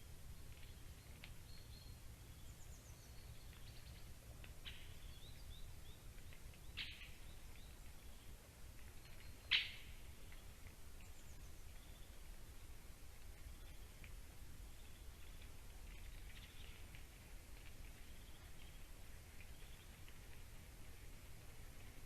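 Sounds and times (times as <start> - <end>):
small birds chirping: 0.0 - 22.0
sharp bird calls: 0.6 - 8.2, 9.1 - 10.1.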